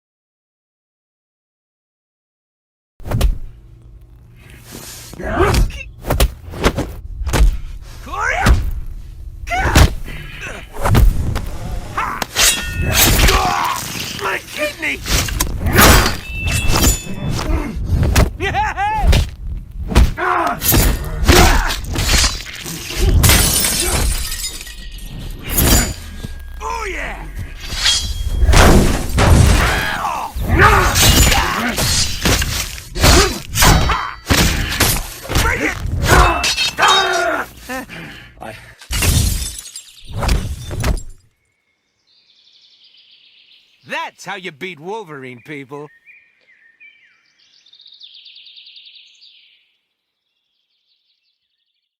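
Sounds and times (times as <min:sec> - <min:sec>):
person grunting: 0:11.5 - 0:12.2
heavy impacts and crashes: 0:19.9 - 0:36.8
birds chirping: 0:22.4 - 0:28.5, 0:39.7 - 0:52.0.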